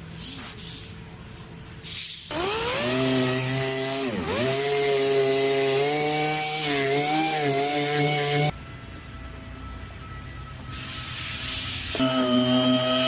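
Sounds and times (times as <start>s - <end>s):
power tool motor running: 11.9s - 13.0s.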